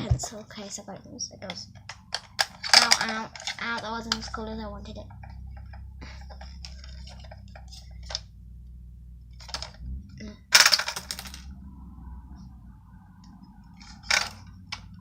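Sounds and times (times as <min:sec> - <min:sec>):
pencil case clatter: 0:01.9 - 0:04.3.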